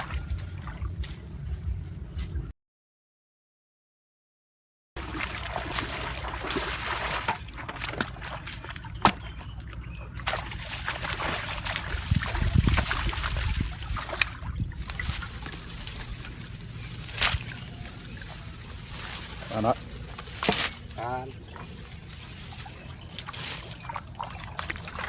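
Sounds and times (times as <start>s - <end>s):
shallow water sloshing: 5.0s - 25.0s.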